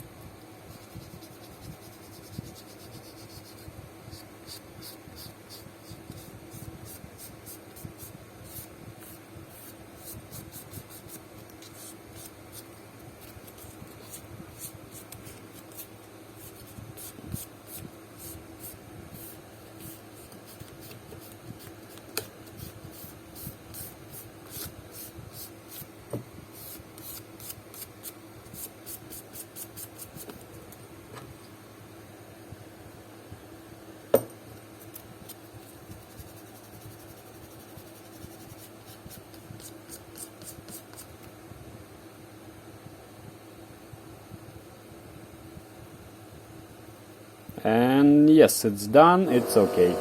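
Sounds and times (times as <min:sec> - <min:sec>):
hand sanding scratchy strokes: 0:35.6 - 0:41.0.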